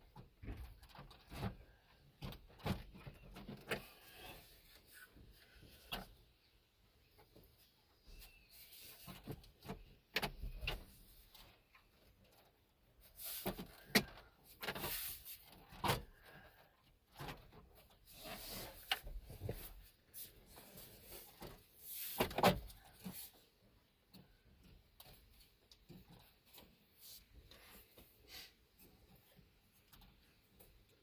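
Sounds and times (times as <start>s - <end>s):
plastic parts clicking and knocking: 13.4s - 14.9s.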